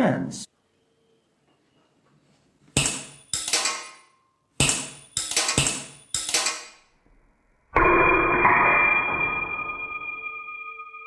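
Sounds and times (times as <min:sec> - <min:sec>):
sharp percussive hits ringing: 0:07.8 - 0:11.0
sustained ringing synth tone: 0:07.8 - 0:11.0.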